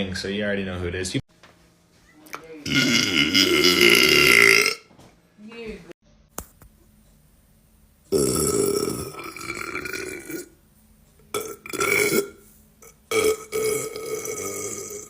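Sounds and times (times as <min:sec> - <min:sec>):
man burping: 0:02.6 - 0:04.9, 0:08.1 - 0:10.6, 0:11.3 - 0:15.0.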